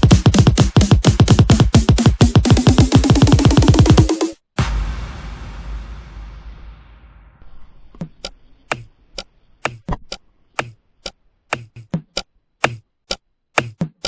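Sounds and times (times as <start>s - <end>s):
electronic music: 0.0s - 5.2s.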